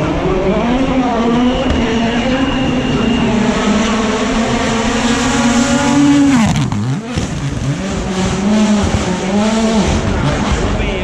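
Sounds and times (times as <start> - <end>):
rally car engine revving: 0.0 - 11.0.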